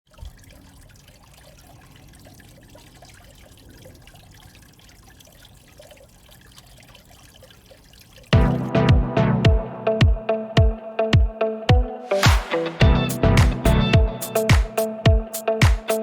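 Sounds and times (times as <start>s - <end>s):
faint water trickling and dripping: 0.0s - 8.4s.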